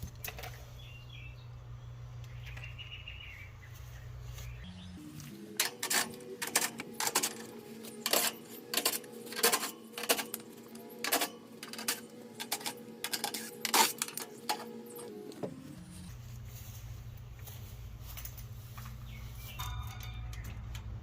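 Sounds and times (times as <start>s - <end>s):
metallic clicks and clinks: 19.4s - 21.0s.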